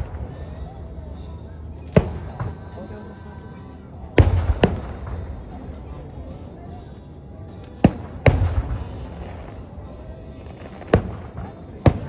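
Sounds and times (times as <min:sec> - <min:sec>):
sharp firework bangs: 0:00.0 - 0:02.7, 0:04.2 - 0:05.8, 0:07.8 - 0:09.6, 0:10.5 - 0:12.0
low rumble of firework bursts: 0:00.0 - 0:12.0.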